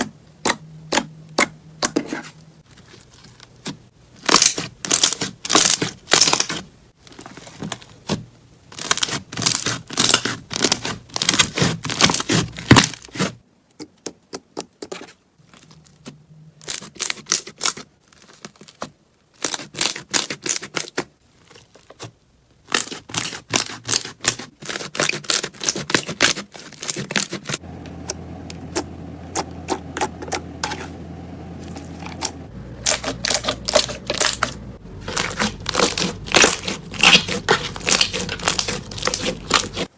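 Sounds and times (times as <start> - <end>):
slime bubbles popping and crackling: 32.2 - 39.8.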